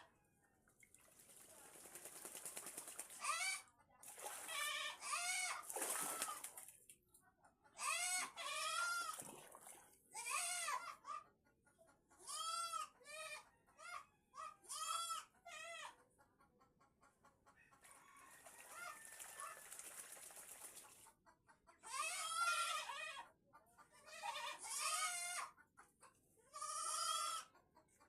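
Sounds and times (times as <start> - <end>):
water splashing: 4.0 - 4.8, 5.6 - 6.8, 9.0 - 10.0.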